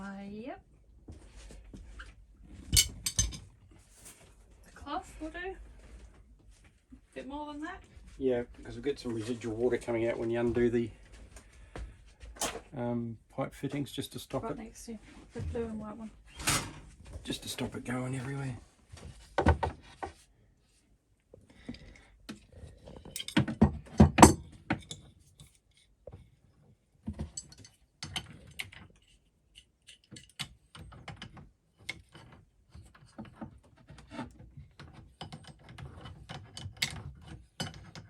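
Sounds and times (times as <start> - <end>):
spanners clicking on pipe fittings: 2.7 - 3.4.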